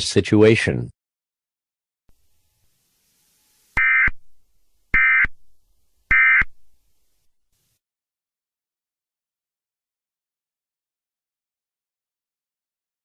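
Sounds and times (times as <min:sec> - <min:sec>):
buzzy warbling data tones: 0:02.4 - 0:05.4, 0:06.1 - 0:06.6.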